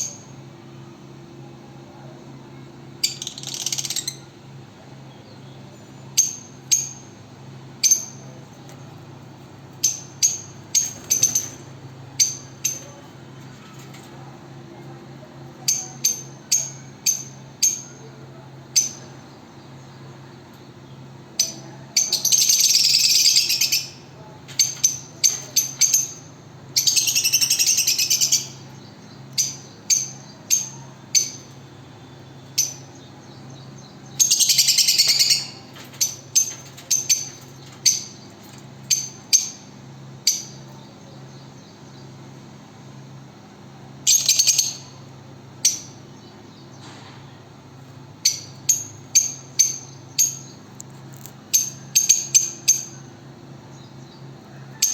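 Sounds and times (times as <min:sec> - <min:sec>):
lovebirds chirping: 0:01.9 - 0:07.2, 0:15.6 - 0:54.9
rapid bird chattering: 0:03.0 - 0:04.4, 0:21.4 - 0:42.1, 0:44.1 - 0:46.8.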